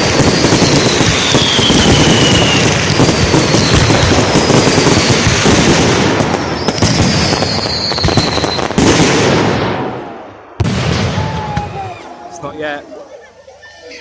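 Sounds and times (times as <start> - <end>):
falling firework whistle: 0.0 - 5.3, 6.3 - 9.0
fireworks bangs and crackling: 0.0 - 12.0.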